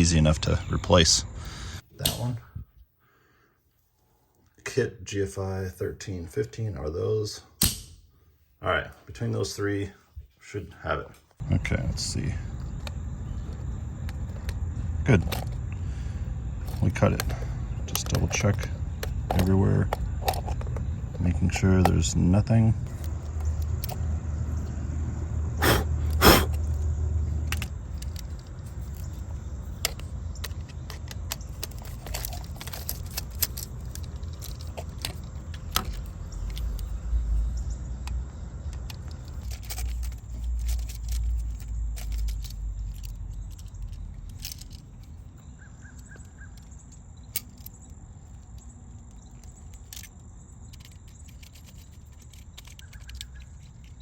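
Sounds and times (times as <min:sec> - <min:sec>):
hand tools clicking and clattering: 0:16.6 - 0:22.2, 0:25.6 - 0:37.0, 0:38.6 - 0:45.3, 0:46.0 - 0:54.0.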